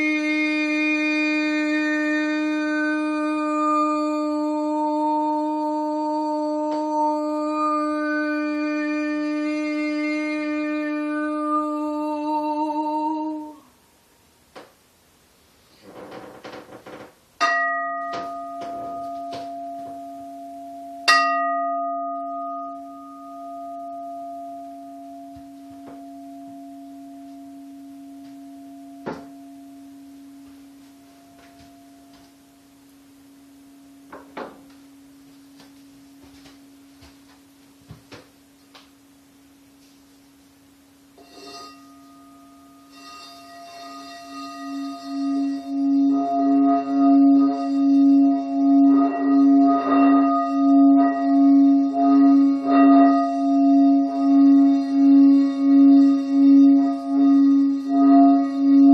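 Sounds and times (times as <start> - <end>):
singing bowl ringing: 0.0 - 14.1, 16.9 - 58.9.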